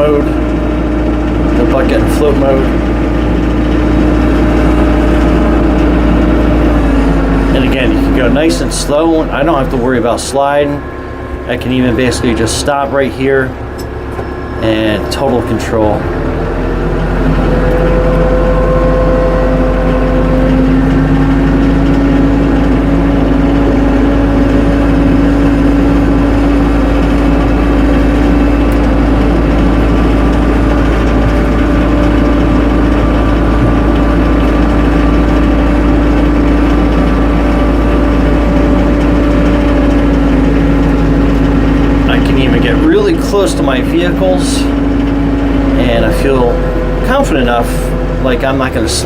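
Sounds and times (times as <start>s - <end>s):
engine whine: 0.0s - 49.0s
tractor engine running: 0.0s - 49.0s.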